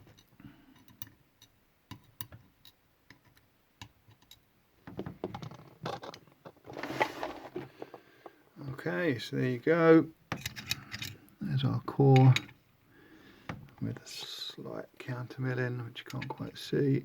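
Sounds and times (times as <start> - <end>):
metal parts scraping on surface: 5.4 - 8.0
small metal parts clicking: 10.3 - 11.2.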